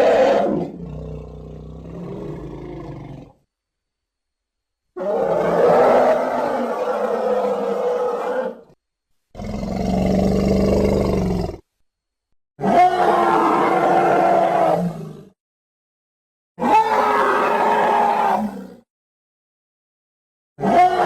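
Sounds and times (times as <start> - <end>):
creature roaring: 0.0 - 3.3, 5.0 - 8.7, 12.6 - 15.3, 16.6 - 18.8, 20.6 - 21.0
creature growling: 16.6 - 18.8.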